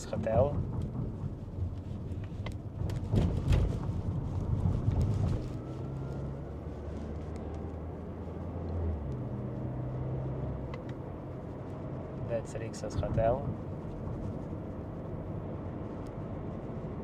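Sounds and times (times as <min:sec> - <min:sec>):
car engine and road noise: 0:00.0 - 0:17.0.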